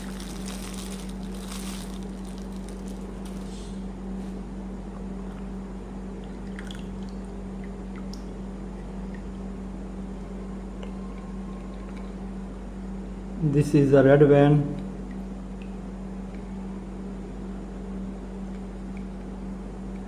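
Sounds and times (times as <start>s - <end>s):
constant hiss: 0.0s - 3.9s
low hum: 0.0s - 13.5s.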